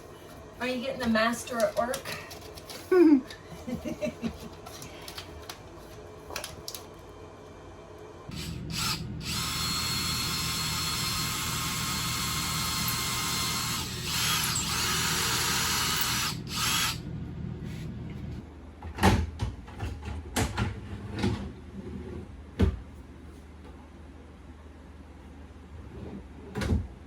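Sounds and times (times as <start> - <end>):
power drill whining: 8.3 - 17.0.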